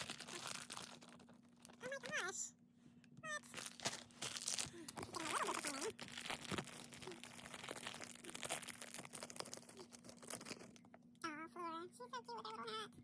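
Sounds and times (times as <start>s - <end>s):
plastic packaging crinkling and tearing: 0.0s - 2.2s, 3.4s - 10.9s.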